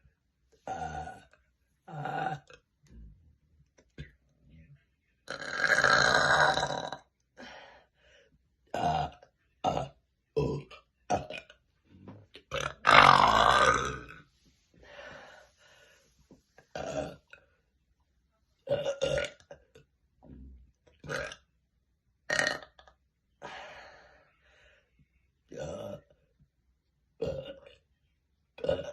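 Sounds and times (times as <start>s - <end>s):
woman burping: 0.6s - 1.3s, 1.9s - 2.6s, 5.3s - 7.0s, 8.7s - 11.5s, 12.4s - 14.2s, 16.7s - 17.4s, 18.7s - 19.5s, 21.0s - 21.4s.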